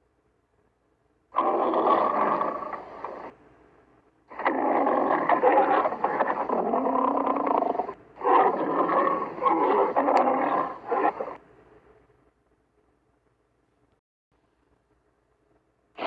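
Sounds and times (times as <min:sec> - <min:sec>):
creature roaring: 0:01.4 - 0:03.3, 0:04.3 - 0:11.4.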